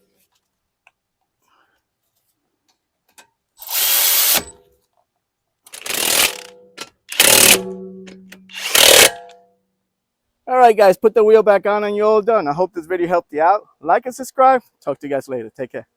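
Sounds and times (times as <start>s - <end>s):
power tool bursts: 3.6s - 4.6s, 5.7s - 6.5s, 7.1s - 7.7s, 8.5s - 9.3s.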